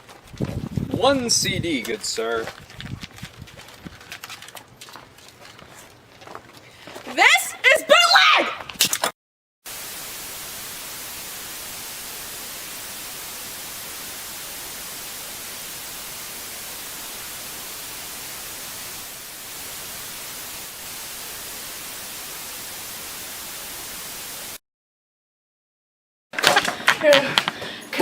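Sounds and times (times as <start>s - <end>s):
static hiss: 9.7s - 24.6s.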